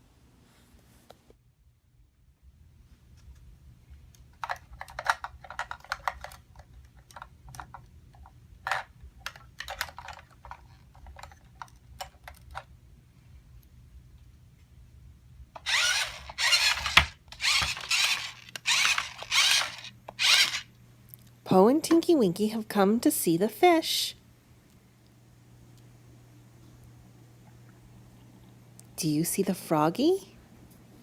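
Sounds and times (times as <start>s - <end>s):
plastic toys clicking and tapping: 4.1s - 12.7s, 15.6s - 20.6s.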